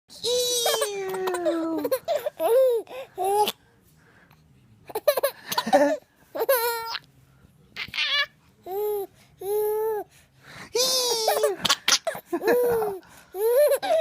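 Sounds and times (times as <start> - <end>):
baby laughing and giggling: 0.3 - 3.6, 4.9 - 7.0, 10.8 - 14.0.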